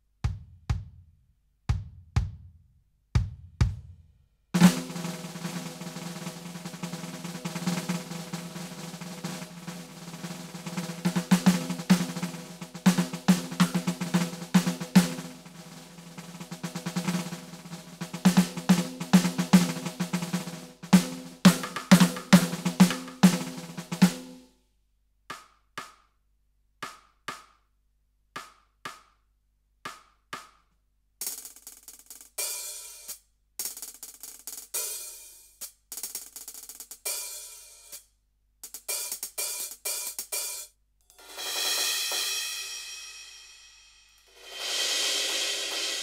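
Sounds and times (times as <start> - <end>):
cymbal and hi-hat strokes: 4.6 - 24.4, 31.2 - 46.0
cymbal crash: 41.2 - 46.0.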